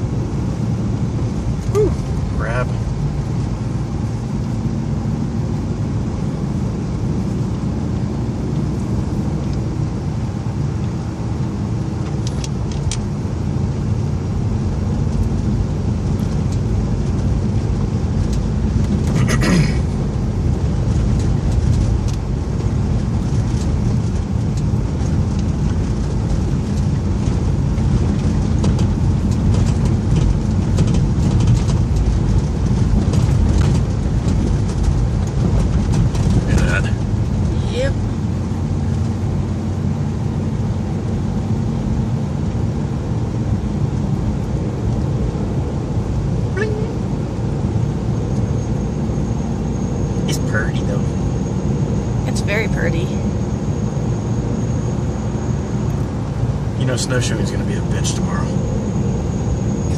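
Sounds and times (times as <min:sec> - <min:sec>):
truck engine and road noise: 0:00.0 - 0:59.9
brief high-pitched sound: 0:46.6 - 0:47.0.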